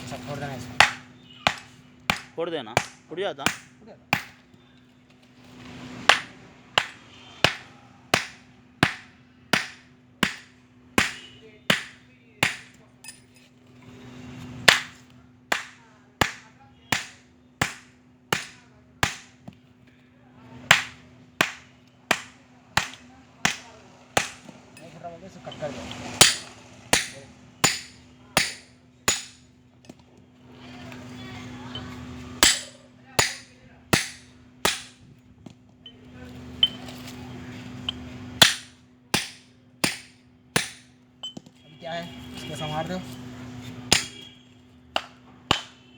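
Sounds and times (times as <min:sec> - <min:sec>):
hammer striking steel shell: 0:00.8 - 0:04.4, 0:06.1 - 0:13.4, 0:14.7 - 0:19.4, 0:20.7 - 0:25.0, 0:26.2 - 0:29.5, 0:31.8 - 0:35.0, 0:37.9 - 0:41.5, 0:43.9 - 0:44.2, 0:45.0 - 0:45.8.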